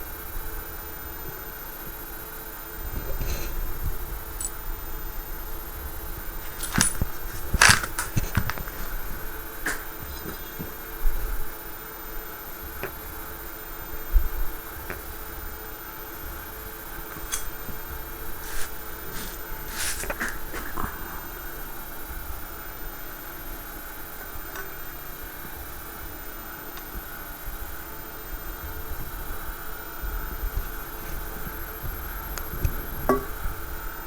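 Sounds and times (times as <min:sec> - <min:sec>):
low background hum: 0:00.0 - 0:34.0
objects clicking and knocking: 0:06.4 - 0:09.0.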